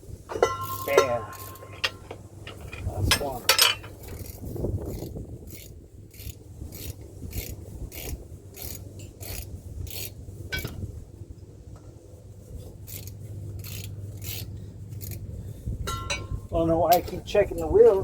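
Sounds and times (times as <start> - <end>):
ratchet wrench clicking: 0.6 - 10.7, 12.8 - 15.2.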